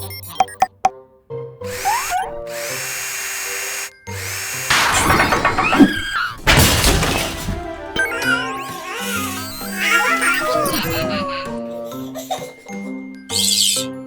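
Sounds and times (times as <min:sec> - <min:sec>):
cartoon power drill whirring: 0:01.7 - 0:12.0
children's background music: 0:07.6 - 0:14.0.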